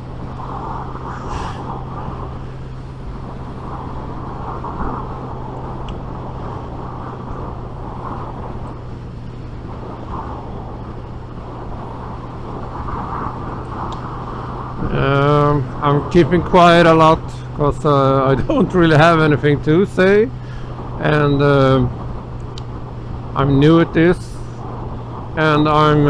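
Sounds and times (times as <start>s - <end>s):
motorcycle engine cruising: 0.0s - 26.0s
wind and road rush: 0.0s - 26.0s.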